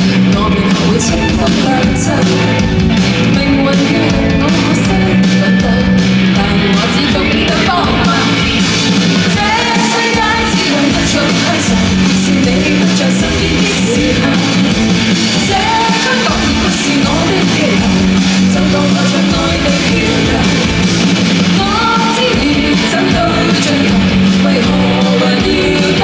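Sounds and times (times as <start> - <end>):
person singing: 0.0 - 2.6, 3.2 - 8.5, 9.3 - 26.0
live band playing a song: 0.0 - 26.0.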